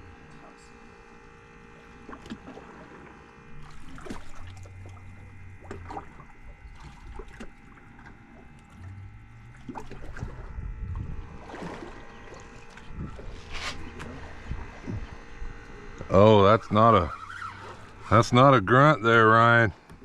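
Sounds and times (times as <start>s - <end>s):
water against hull: 0.4s - 20.0s
knocks and clicks on boat: 2.0s - 16.1s, 19.8s - 20.0s
low rumble: 3.5s - 17.0s.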